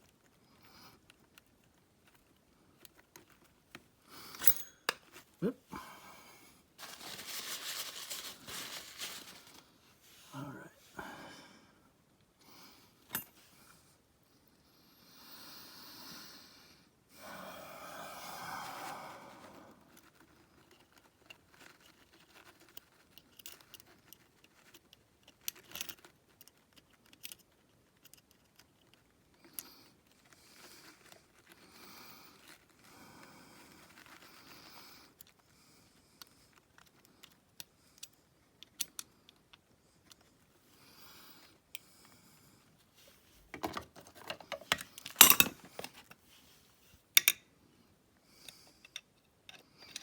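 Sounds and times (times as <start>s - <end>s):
small hand tools clicking and scraping: 0.0s - 5.5s, 19.8s - 32.9s, 43.5s - 46.2s, 47.1s - 47.4s, 48.4s - 50.0s
soft rustle: 6.3s - 11.2s, 18.6s - 37.4s, 40.0s - 47.1s.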